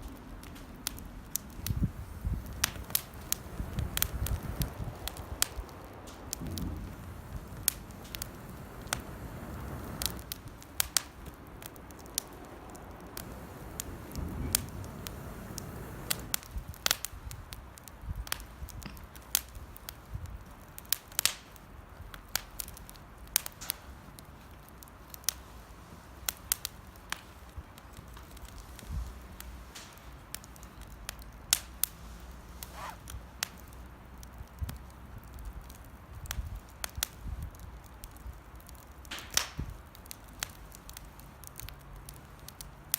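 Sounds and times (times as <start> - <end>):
campfire crackling and popping: 0.0 - 25.6, 26.2 - 42.9
low rumble: 1.5 - 16.5.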